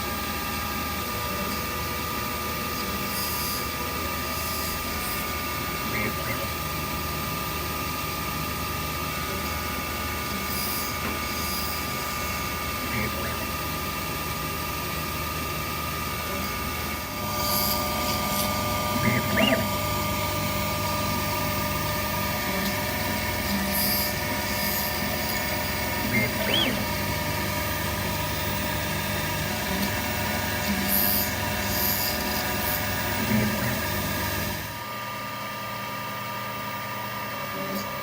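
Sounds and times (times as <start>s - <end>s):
cnc router spindle whine: 0.0s - 38.0s
low machine hum: 0.0s - 38.0s
drill plunging: 16.0s - 34.8s.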